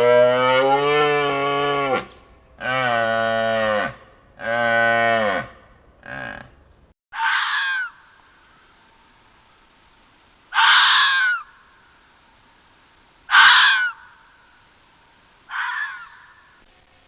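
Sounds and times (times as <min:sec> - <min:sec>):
animal harsh cry: 0:00.0 - 0:06.6, 0:07.2 - 0:08.0, 0:10.5 - 0:11.5, 0:13.3 - 0:14.1, 0:15.5 - 0:16.4.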